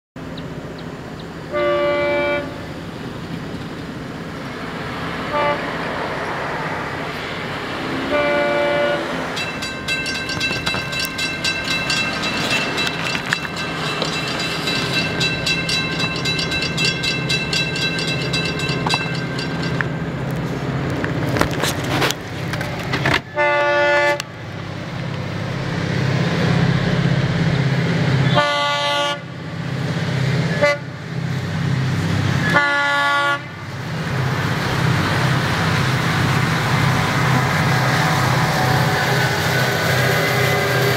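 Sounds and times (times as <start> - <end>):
locomotive horn blasts: 1.5 - 2.6, 5.3 - 5.7, 8.0 - 9.4, 23.3 - 24.3, 28.2 - 29.3, 30.5 - 31.0, 32.4 - 33.6
steady high ringing: 9.3 - 20.3.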